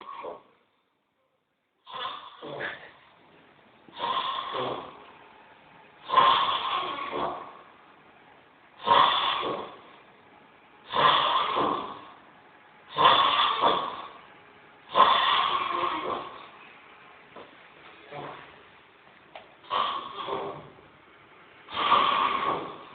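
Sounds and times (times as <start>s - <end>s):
loud snoring: 0.0s - 0.5s, 1.8s - 2.9s, 3.9s - 5.1s, 6.0s - 7.7s, 8.8s - 10.0s, 10.8s - 12.2s, 12.9s - 14.2s, 14.9s - 16.6s, 18.1s - 18.6s, 19.6s - 20.8s, 21.7s - 22.9s.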